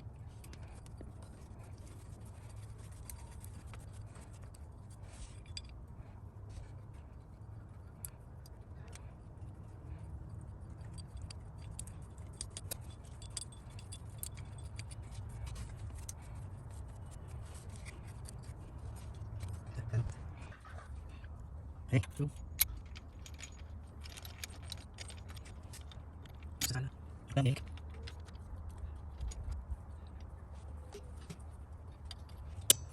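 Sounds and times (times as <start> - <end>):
metal tools clinking: 6.6 - 20.0, 22.0 - 30.2, 31.8 - 32.9.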